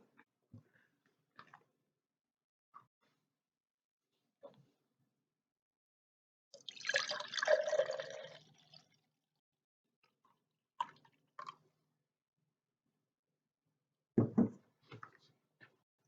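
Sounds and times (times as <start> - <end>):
juice pouring into a glass: 6.6 - 9.0
heavy knocks on table: 14.2 - 14.6.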